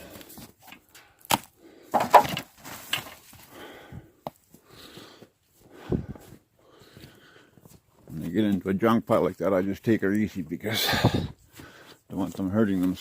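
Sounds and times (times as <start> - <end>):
wood and scrap cracking: 0.0 - 3.5.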